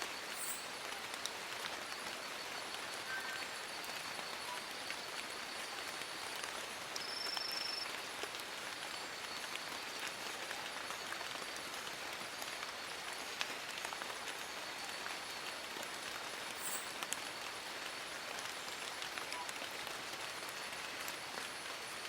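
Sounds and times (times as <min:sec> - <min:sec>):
raindrops pattering on leaves: 0:00.0 - 0:22.0.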